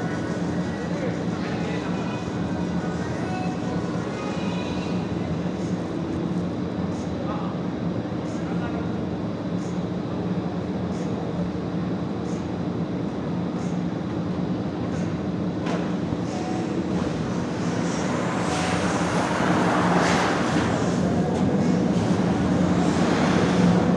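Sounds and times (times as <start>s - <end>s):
vehicle engine hum: 15.8s - 23.9s
rushing noise: 16.6s - 23.9s.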